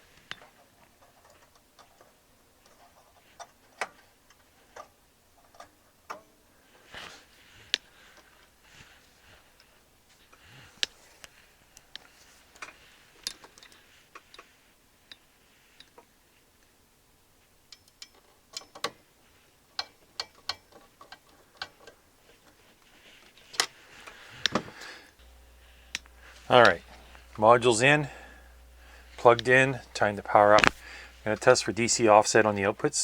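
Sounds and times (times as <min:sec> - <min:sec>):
clicks and taps of metal parts: 0:00.2 - 0:06.3, 0:10.8 - 0:14.5, 0:17.7 - 0:19.0, 0:19.7 - 0:22.0.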